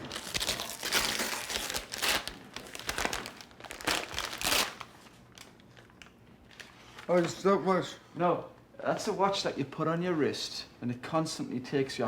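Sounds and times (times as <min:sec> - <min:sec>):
wrapping paper tearing and crumpling: 0:00.0 - 0:05.9.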